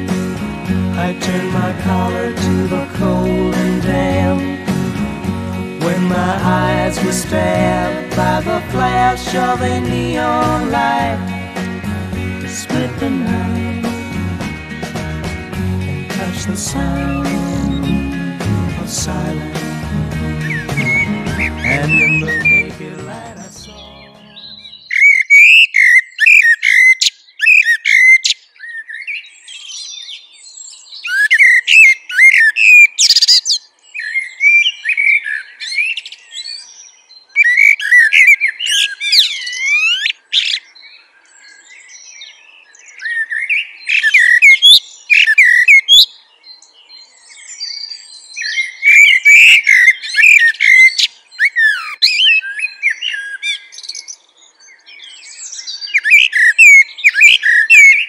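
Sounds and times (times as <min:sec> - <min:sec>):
songbird singing: 0:15.9 - 0:58.0.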